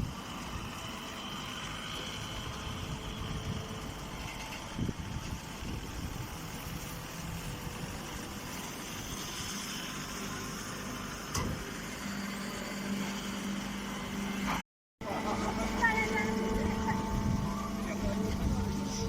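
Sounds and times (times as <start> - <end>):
engine running: 0.0 - 19.0
steady hum: 12.2 - 19.0.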